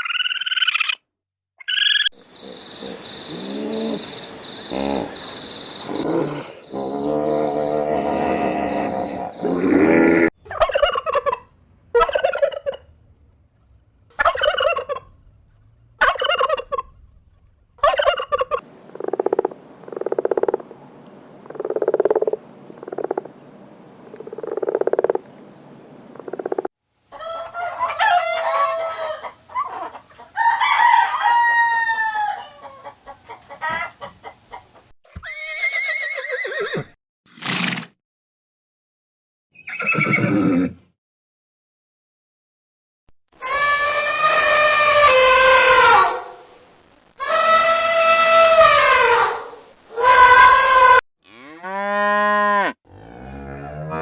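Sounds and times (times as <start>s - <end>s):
poultry calling: 10.5s - 12.9s, 14.1s - 15.2s, 16.0s - 17.0s, 17.8s - 18.6s
squawking calls: 10.5s - 12.9s, 14.2s - 15.2s, 16.0s - 17.0s, 17.8s - 18.6s.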